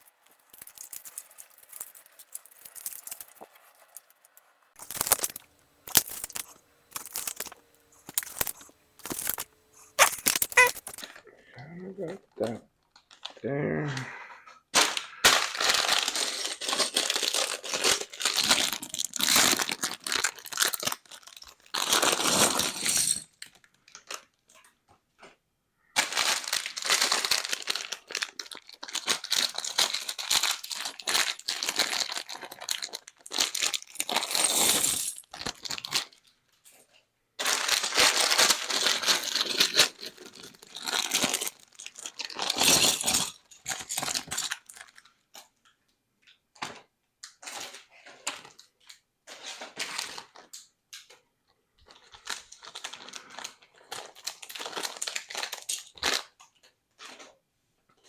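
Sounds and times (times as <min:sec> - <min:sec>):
plastic bags crinkling: 0:00.0 - 0:11.0, 0:14.9 - 0:22.3, 0:26.0 - 0:34.6, 0:35.2 - 0:36.3, 0:37.4 - 0:45.2, 0:51.8 - 0:56.2.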